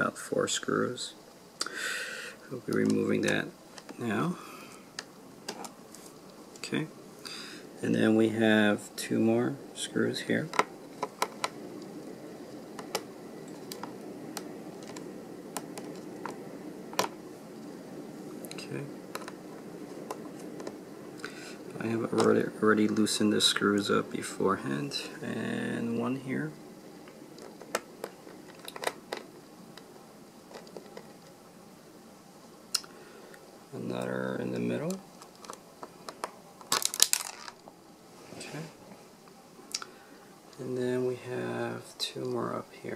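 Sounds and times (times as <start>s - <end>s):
steady hiss: 0.0s - 42.9s.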